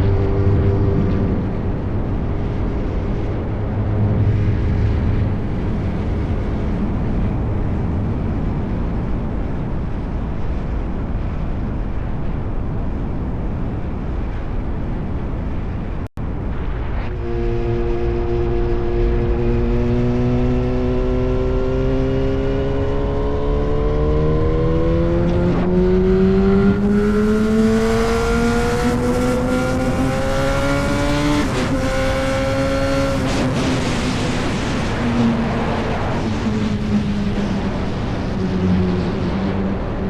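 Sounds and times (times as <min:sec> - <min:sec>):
motorcycle engine accelerating: 0:00.0 - 0:09.6, 0:16.2 - 0:40.0.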